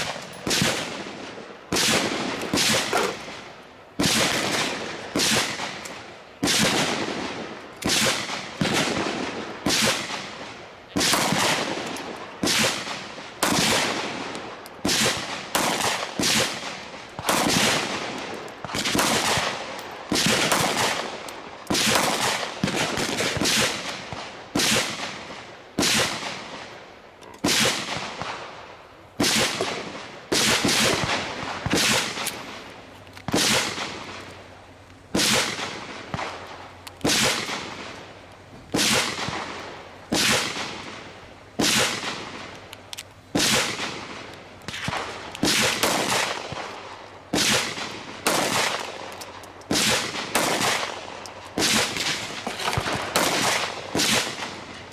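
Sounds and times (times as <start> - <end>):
gunshots with short echo: 0.0 - 5.8, 43.4 - 54.6.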